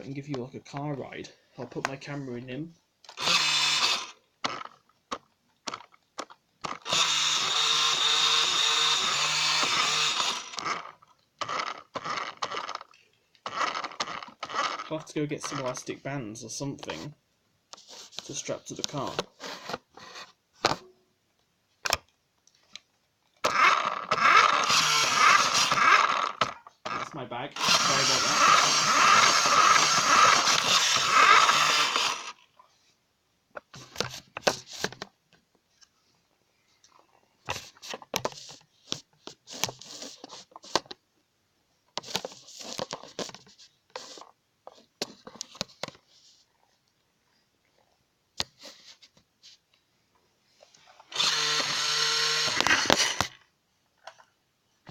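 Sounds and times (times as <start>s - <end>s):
toy car motor whirring: 3.1s - 4.8s, 6.6s - 15.9s, 23.4s - 32.5s, 51.0s - 53.4s
rustling and scraping: 16.8s - 20.8s, 33.7s - 40.9s, 42.0s - 46.8s.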